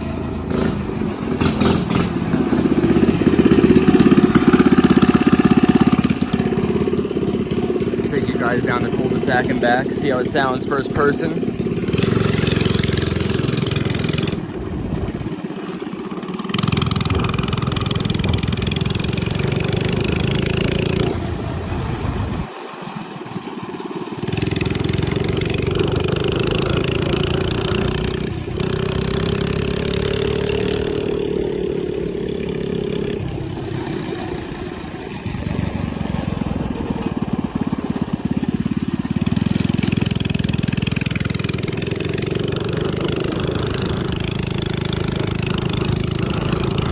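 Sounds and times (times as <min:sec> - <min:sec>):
mini bike engine revving: 0:00.0 - 0:46.9
wind on microphone: 0:14.3 - 0:15.4, 0:16.9 - 0:19.1.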